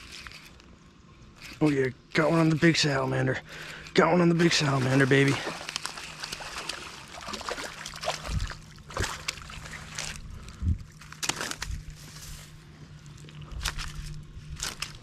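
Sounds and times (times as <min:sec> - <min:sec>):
water splashing and sloshing: 0:02.2 - 0:15.0.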